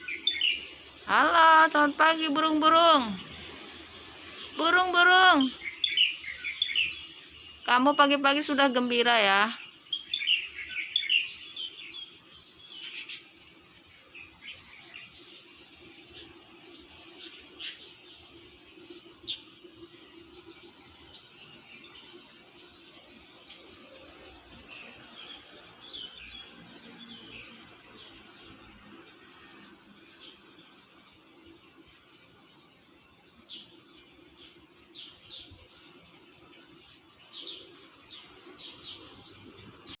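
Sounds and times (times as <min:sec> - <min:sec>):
small bird chirping: 0:00.0 - 0:02.1, 0:04.5 - 0:07.8, 0:09.6 - 0:13.3
birds chirping: 0:00.0 - 0:40.0.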